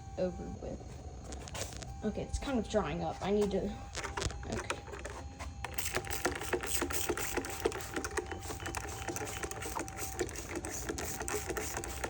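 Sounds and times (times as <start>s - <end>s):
thin electrical buzz: 0.0s - 12.0s
bike freewheel ratchet ticking: 5.7s - 12.0s.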